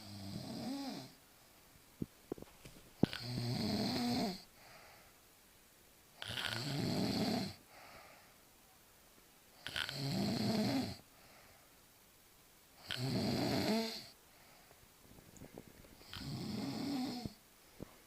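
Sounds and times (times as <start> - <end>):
woman snoring: 0.0 - 1.2, 3.0 - 4.4, 6.2 - 7.6, 9.6 - 11.0, 12.8 - 14.2, 16.0 - 17.4
soft breath out: 4.5 - 5.2, 7.6 - 8.5, 11.1 - 11.8, 14.3 - 16.2.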